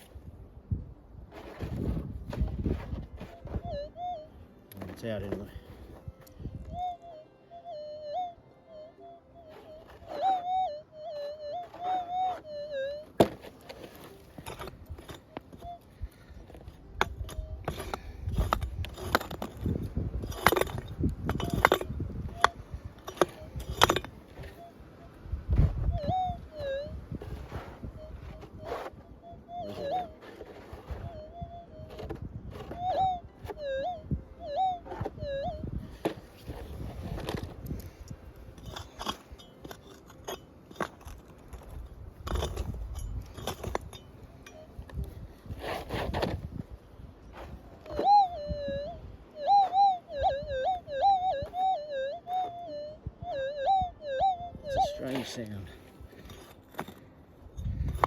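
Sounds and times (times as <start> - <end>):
metal tool digging in gravel: 13.1 - 15.7, 16.5 - 24.7, 36.0 - 46.6, 54.8 - 57.0.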